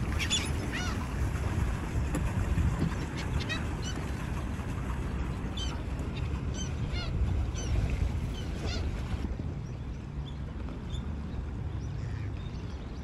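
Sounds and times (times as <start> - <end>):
birds calling: 0.1 - 1.0.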